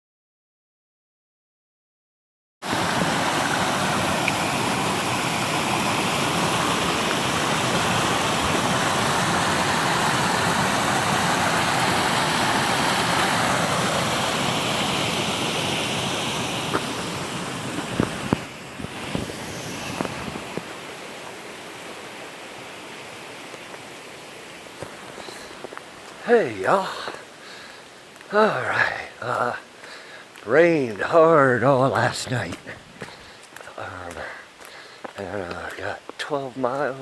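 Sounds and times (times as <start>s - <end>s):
running water rushing: 2.6s - 37.0s.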